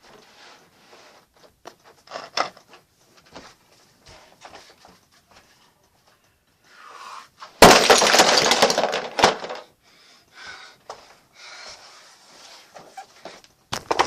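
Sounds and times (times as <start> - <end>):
toy brick house crashing: 7.5 - 9.8, 13.7 - 14.0
plastic bricks clattering: 7.6 - 9.7.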